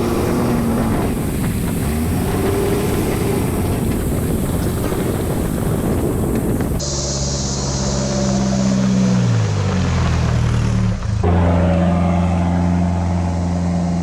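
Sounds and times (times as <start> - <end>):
wind noise on microphone: 0.0 - 7.0
engine and tyre rumble: 0.0 - 14.0.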